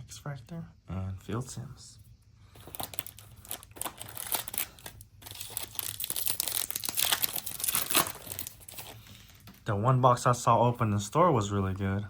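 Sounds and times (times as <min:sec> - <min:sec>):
wrapper crinkling and tearing: 0:02.6 - 0:09.5.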